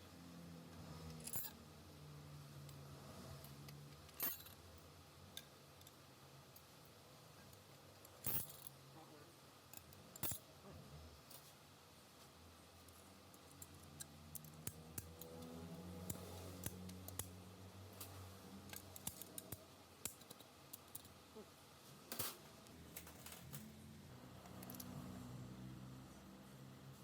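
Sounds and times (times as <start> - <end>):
metal parts clicking and clinking: 1.2 - 1.6, 4.0 - 4.7, 7.9 - 8.8, 9.7 - 10.5, 12.9 - 15.3, 18.7 - 21.2, 24.6 - 24.9.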